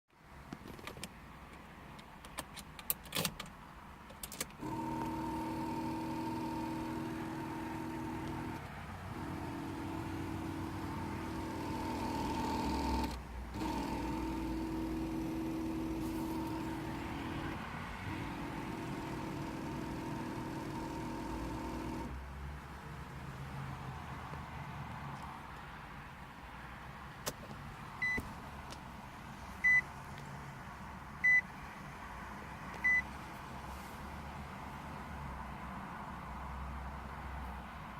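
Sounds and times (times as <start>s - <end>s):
electric motor whine: 4.6s - 22.1s.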